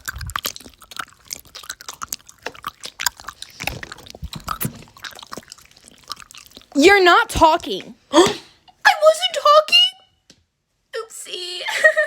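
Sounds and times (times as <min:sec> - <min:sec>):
mouth clicks: 0:00.0 - 0:06.8
person chewing crunchily: 0:00.0 - 0:06.8.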